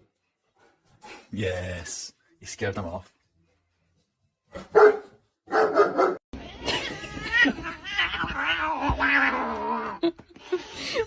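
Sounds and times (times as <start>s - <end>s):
cat yowling: 6.4s - 10.0s.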